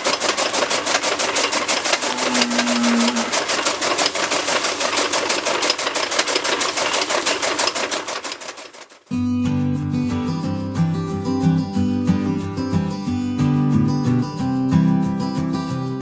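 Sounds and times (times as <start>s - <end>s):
rapid mechanical clicking: 0.0s - 9.1s.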